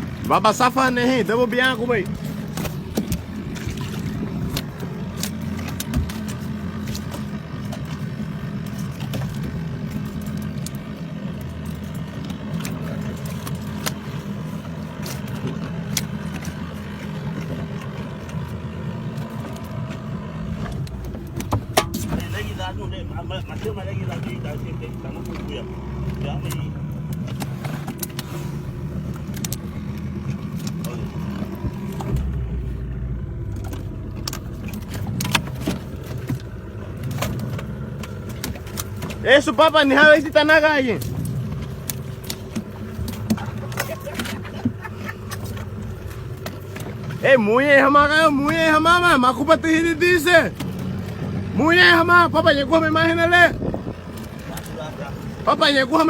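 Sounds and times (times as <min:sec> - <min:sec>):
boat motor humming: 0:00.0 - 0:56.0
engine droning: 0:00.0 - 0:56.0
sharp clicks and knocks: 0:19.2 - 0:22.5.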